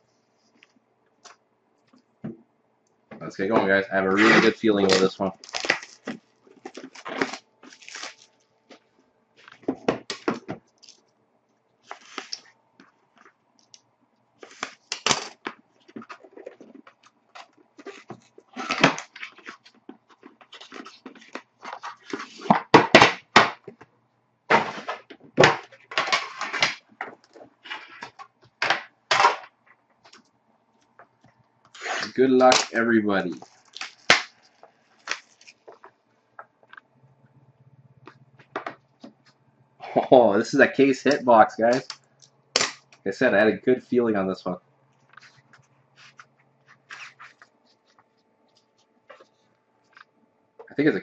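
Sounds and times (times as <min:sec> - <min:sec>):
packaging rustling and tearing: 0:04.1 - 0:11.0, 0:11.9 - 0:12.5, 0:14.4 - 0:22.6, 0:31.7 - 0:35.9.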